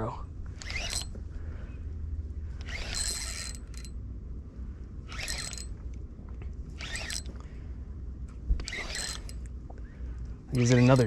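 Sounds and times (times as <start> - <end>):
fishing reel whirring: 0.6 - 1.1, 2.6 - 3.9, 5.1 - 5.7, 6.8 - 7.3, 8.6 - 9.5, 10.5 - 11.0.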